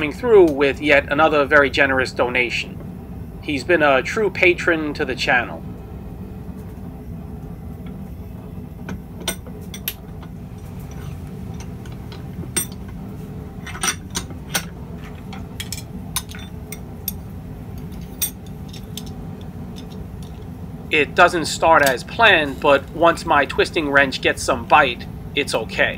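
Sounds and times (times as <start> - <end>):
low hum: 0.0 - 25.9
metal tools clinking: 9.3 - 13.0, 13.6 - 16.6.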